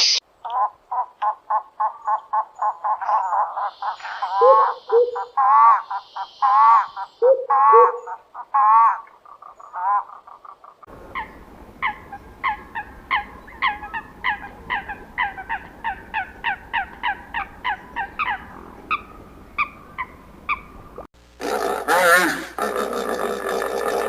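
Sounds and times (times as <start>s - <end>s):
steady hiss: 0.0s - 0.4s, 3.6s - 7.2s
poultry calling: 0.4s - 24.0s.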